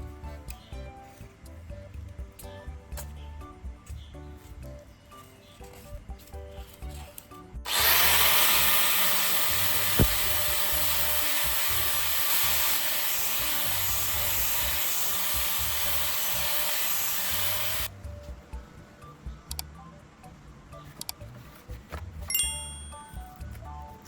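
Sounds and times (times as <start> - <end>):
power tool working metal: 7.7 - 17.9.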